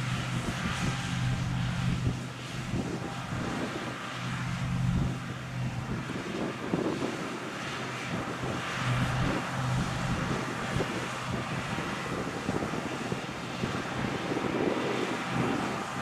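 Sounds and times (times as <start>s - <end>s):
combine harvester engine hum: 0.0s - 16.0s
wind noise on microphone: 0.0s - 16.0s.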